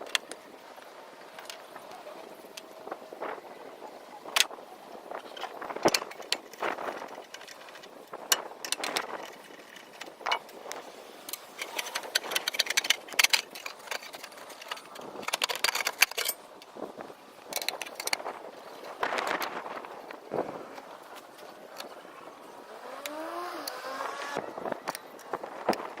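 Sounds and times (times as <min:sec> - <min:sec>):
tools and metal parts clinking: 0:04.3 - 0:16.7, 0:17.5 - 0:18.9.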